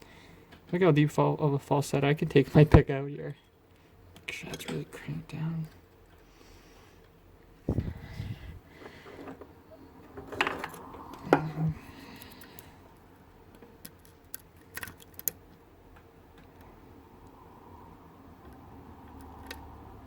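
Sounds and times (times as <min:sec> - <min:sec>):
lock picks clicking and scraping: 0:13.5 - 0:15.5.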